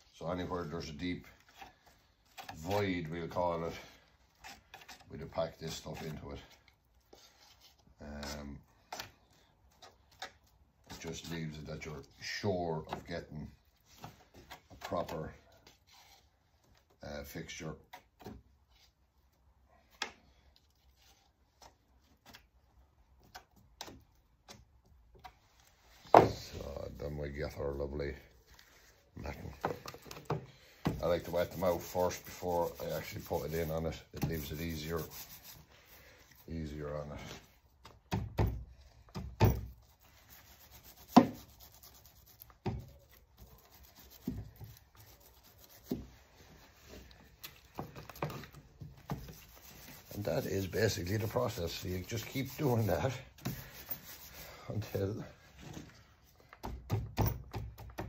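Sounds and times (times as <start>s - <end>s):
brush strokes on wet fibreglass: 0.0s - 19.4s, 31.0s - 37.8s, 39.7s - 56.2s.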